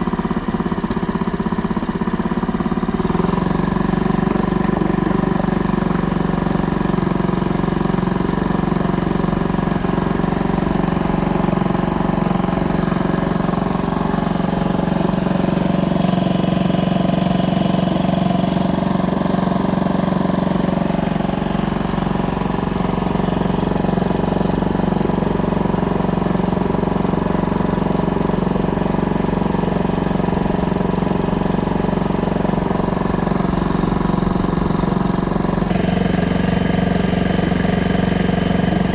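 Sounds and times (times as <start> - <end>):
small outboard motor running: 0.0 - 38.9.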